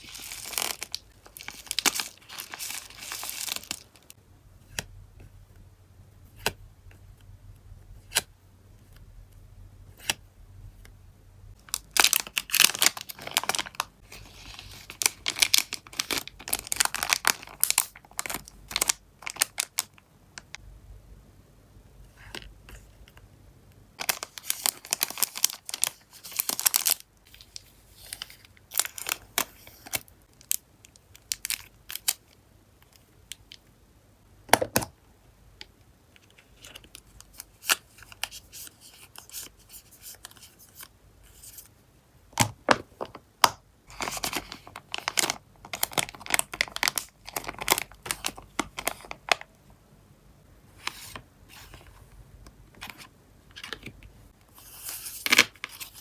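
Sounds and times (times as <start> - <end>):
plastic sleeves crinkling: 0.0 - 4.2, 11.6 - 20.6, 24.0 - 32.2, 43.9 - 49.5.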